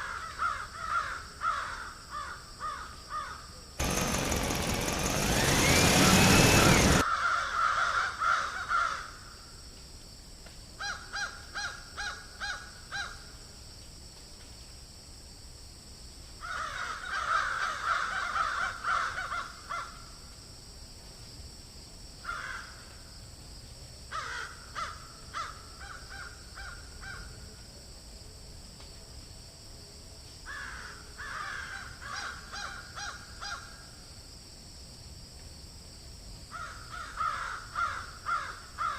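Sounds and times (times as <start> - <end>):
loud burst of noise: 3.8 - 7.0.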